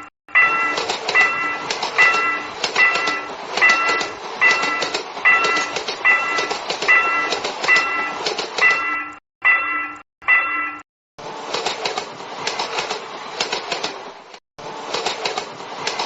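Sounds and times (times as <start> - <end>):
level crossing bell ringing: 0.0 - 10.8
train clattering past: 0.4 - 9.1, 11.2 - 16.0.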